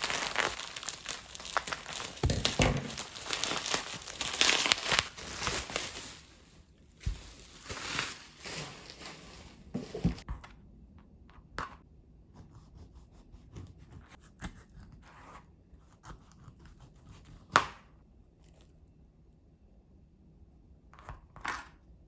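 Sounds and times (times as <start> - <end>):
rustling: 0.0 - 10.2.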